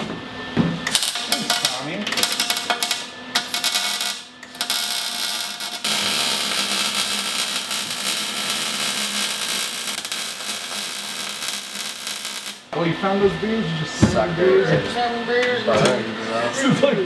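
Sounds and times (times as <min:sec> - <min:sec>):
welding arc crackling and hissing: 0:00.9 - 0:12.7.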